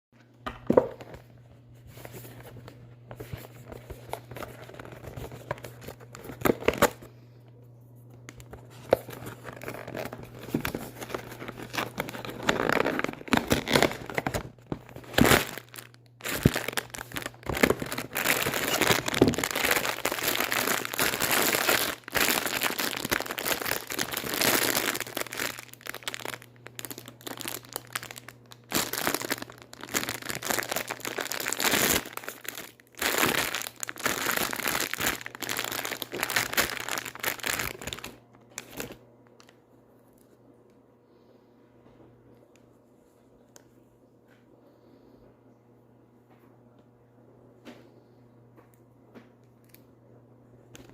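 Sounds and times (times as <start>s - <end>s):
faint low hum: 0.2s - 50.9s
plastic packaging crinkling and tearing: 1.9s - 7.1s, 8.3s - 39.6s.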